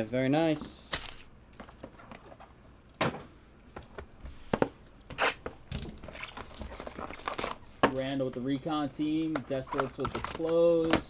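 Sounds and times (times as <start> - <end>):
soft card rustling: 0.4 - 2.6, 6.1 - 11.0
cards tapping and sliding: 0.6 - 2.2.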